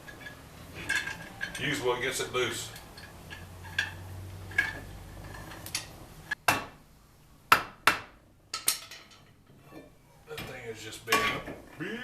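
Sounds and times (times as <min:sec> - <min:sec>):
metal clanks from hand tools: 0:08.5 - 0:11.8.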